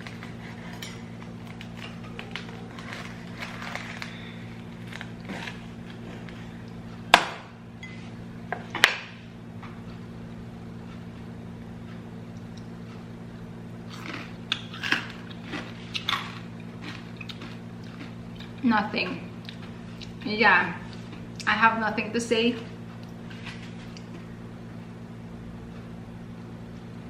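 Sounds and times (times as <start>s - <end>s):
crispy pork skin crunching: 0.0s - 6.9s, 13.9s - 18.6s
steady low hum: 0.0s - 27.0s.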